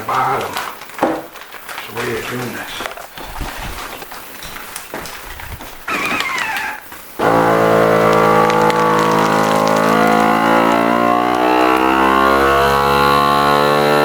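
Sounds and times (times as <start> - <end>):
vacuum sealer pump motor: 5.9 - 14.0.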